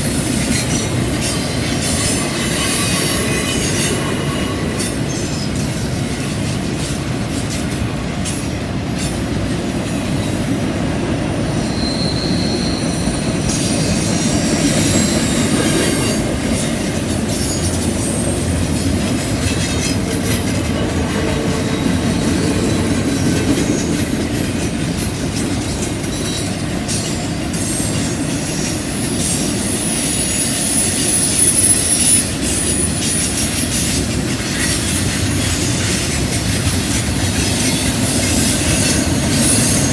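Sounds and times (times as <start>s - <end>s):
freight train rumbling: 0.0s - 39.9s
wheel flanges squealing: 11.5s - 24.1s, 25.8s - 39.9s.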